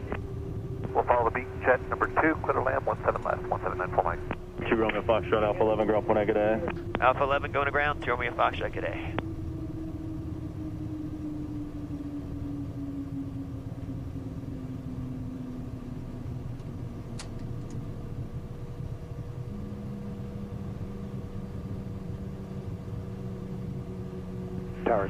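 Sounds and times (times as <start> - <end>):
jet engine rumble: 0.0 - 25.0
steady hum: 0.0 - 25.0
click: 16.6 - 17.8.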